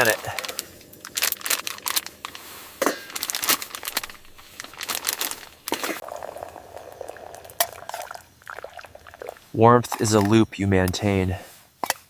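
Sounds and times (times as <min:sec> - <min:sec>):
packaging crinkling: 0:00.0 - 0:06.2
faint steady hum: 0:00.0 - 0:11.7.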